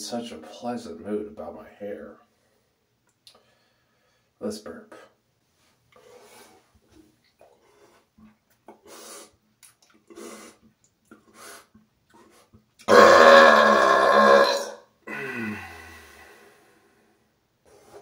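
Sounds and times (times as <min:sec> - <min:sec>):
man burping: 0:12.8 - 0:15.8.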